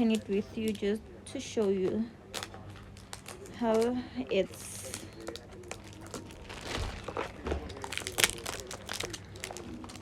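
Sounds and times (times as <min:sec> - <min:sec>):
plastic film crinkling: 0:02.3 - 0:04.0, 0:04.8 - 0:10.0.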